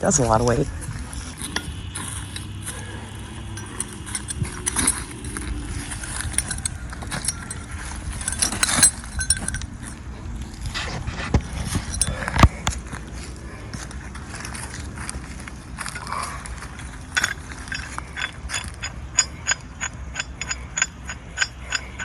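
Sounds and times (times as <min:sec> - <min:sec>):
steel rigging hardware clinking: 0:01.2 - 0:10.0, 0:11.5 - 0:12.6, 0:15.8 - 0:22.0.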